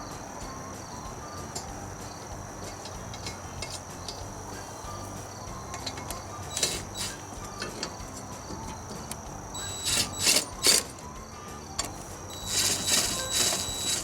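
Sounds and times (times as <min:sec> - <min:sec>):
short rasping bursts: 0:09.6 - 0:10.9.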